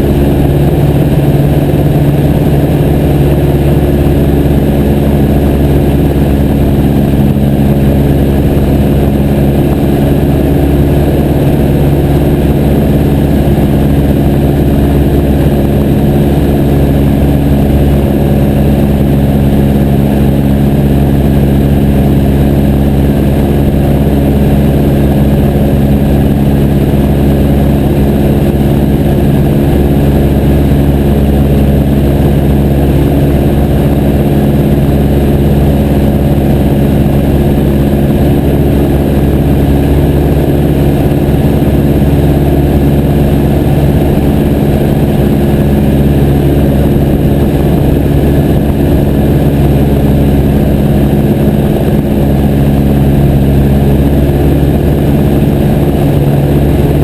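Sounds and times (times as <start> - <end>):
propeller plane engine drone: 0.0 - 57.0.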